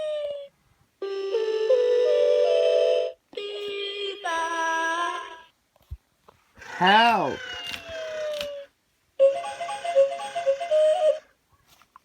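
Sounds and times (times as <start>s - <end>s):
electronic toy synthesized tones: 9.2s - 11.2s.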